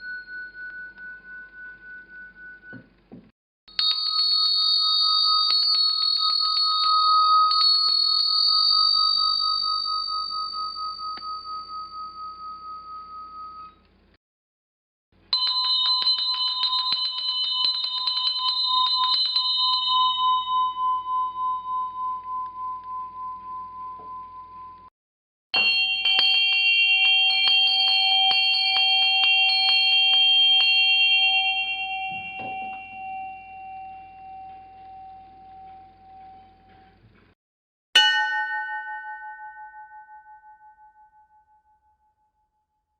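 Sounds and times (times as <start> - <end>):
high bell ringing: 0.0 - 2.6, 3.7 - 13.8, 15.3 - 24.8, 25.6 - 36.9, 38.0 - 41.7
lower bell struck rapidly: 3.8 - 13.7, 15.3 - 22.0, 25.6 - 36.1, 38.0 - 41.6
deep bell ringing: 25.6 - 36.9, 38.0 - 41.6.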